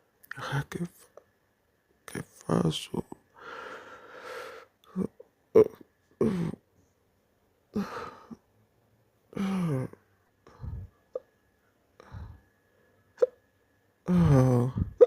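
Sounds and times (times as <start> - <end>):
person hiccuping: 5.6 - 6.6, 13.2 - 13.4.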